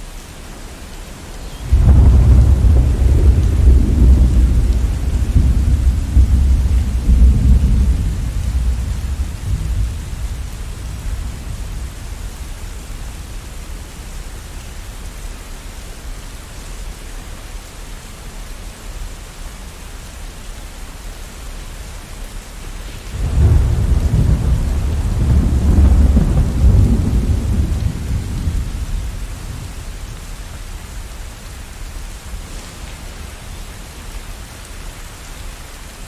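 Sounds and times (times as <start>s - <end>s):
heavy rain: 0.0s - 36.0s
thunder clap rolling: 1.7s - 11.8s, 23.1s - 29.8s.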